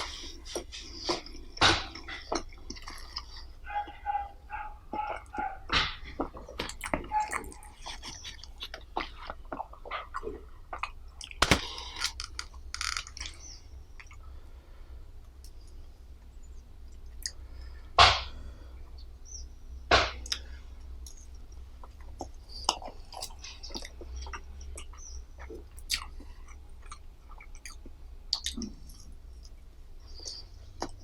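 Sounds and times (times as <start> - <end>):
person chewing: 0.0 - 14.3, 20.1 - 31.0
sharp knocks or crunches: 11.4 - 13.1.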